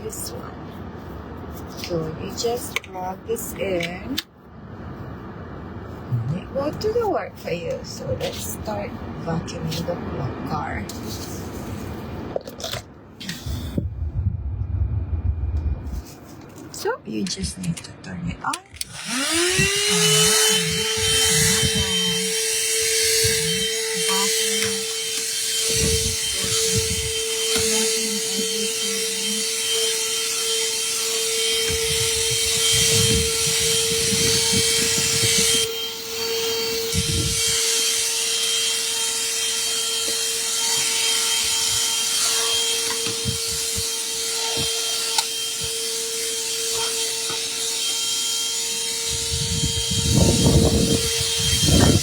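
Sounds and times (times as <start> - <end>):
car vacuum cleaner running: 18.8 - 52.0.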